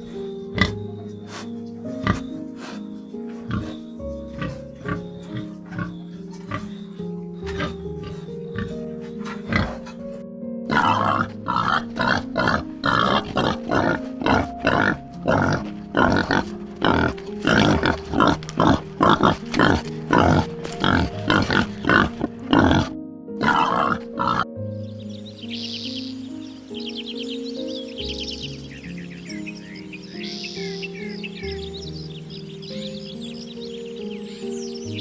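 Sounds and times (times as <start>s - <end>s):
animal grunting: 0.0s - 24.5s
background music held notes: 0.0s - 35.0s.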